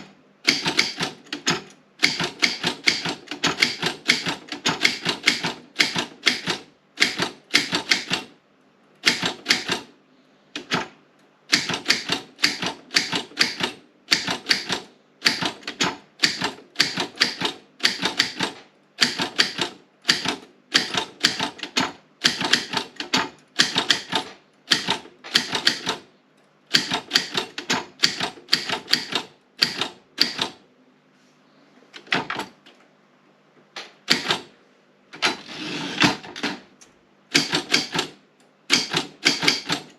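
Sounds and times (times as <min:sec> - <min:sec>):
manual typewriter key strikes: 0:00.0 - 0:08.3, 0:09.0 - 0:09.9, 0:10.6 - 0:10.9, 0:11.5 - 0:26.0, 0:26.7 - 0:30.6, 0:34.0 - 0:34.5, 0:37.3 - 0:39.9.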